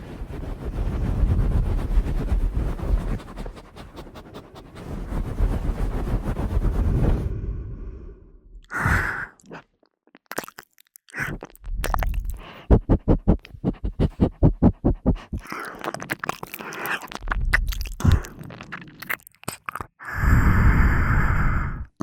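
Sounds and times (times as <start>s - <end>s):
wet mouth noise: 8.6s - 20.6s
wet clicking licks: 9.4s - 19.9s.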